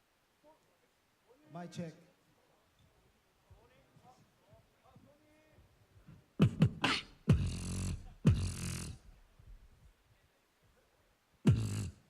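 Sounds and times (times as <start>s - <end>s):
beatboxing kick drum hits: 6.4s - 9.1s, 11.5s - 12.0s
beatboxing bass sounds with hiss: 6.4s - 9.2s, 11.4s - 12.0s.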